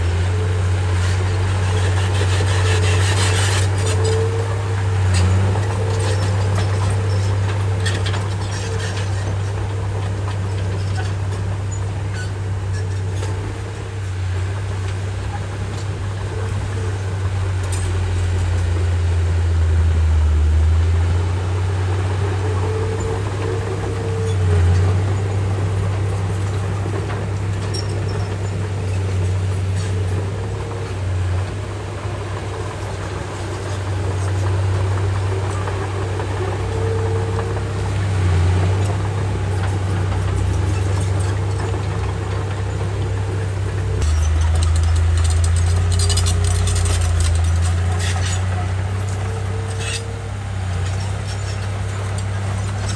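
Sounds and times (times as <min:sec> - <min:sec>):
bulldozer diesel engine droning: 0:00.0 - 0:52.9.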